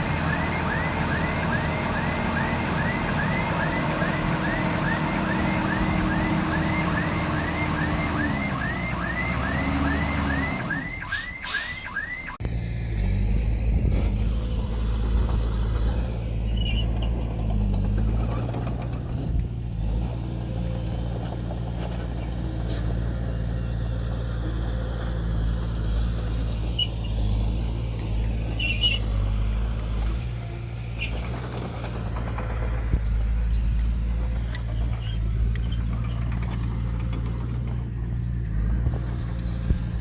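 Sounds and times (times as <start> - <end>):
bulldozer diesel engine droning: 0.0 - 40.0
metallic squeaks and clicks: 10.8 - 12.0, 15.7 - 19.3, 26.5 - 40.0.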